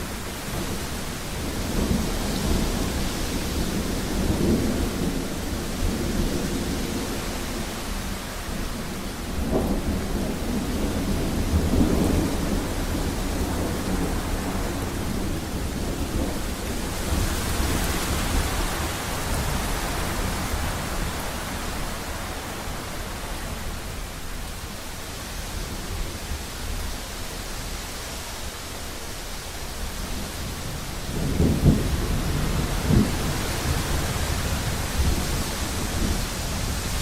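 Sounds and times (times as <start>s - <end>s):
steady rain: 0.0s - 37.0s
rolling thunder: 30.0s - 37.0s.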